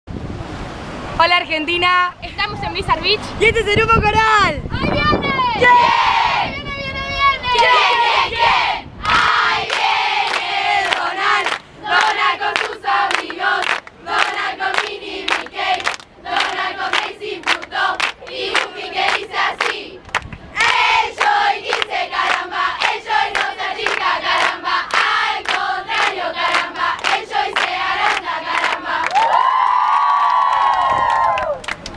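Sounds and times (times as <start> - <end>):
group chanting in unison: 7.5 - 20.0, 20.6 - 29.2
hand clapping: 9.7 - 29.3.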